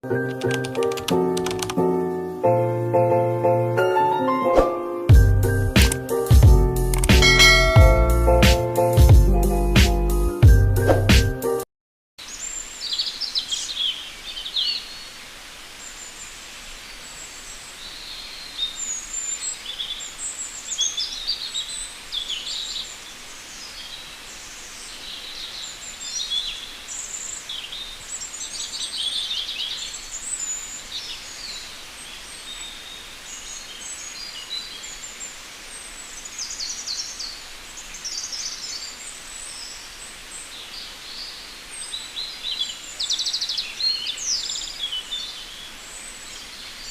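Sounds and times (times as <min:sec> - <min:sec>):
birds chirping and trilling: 0:07.2 - 0:08.9, 0:12.2 - 0:46.9
steady background hiss: 0:12.2 - 0:46.9.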